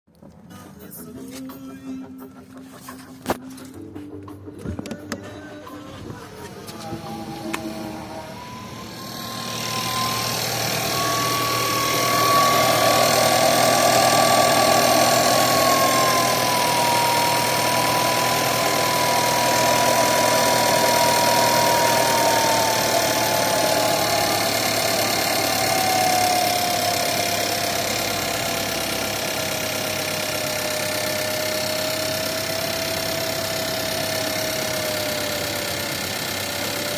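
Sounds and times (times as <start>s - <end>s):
engine running: 0.1s - 36.9s
high whistling whine: 6.2s - 36.9s.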